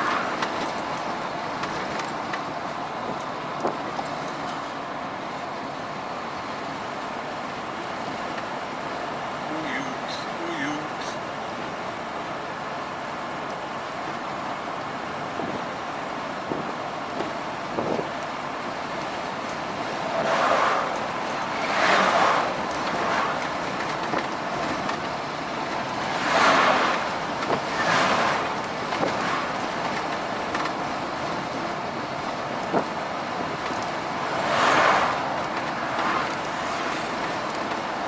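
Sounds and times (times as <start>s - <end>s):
passing vehicles whooshing: 0.0s - 6.9s, 16.4s - 38.0s
truck road noise: 0.0s - 38.0s.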